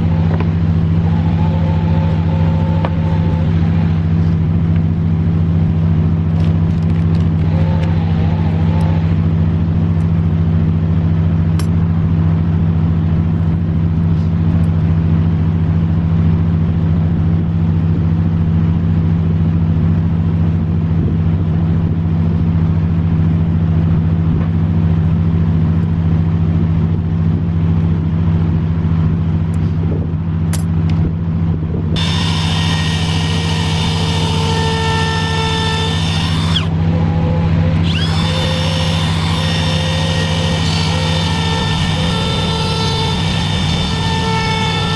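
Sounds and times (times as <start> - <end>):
power tool whining: 0.0 - 4.4, 6.4 - 9.2, 32.0 - 44.9
low mechanical drone: 0.0 - 44.9.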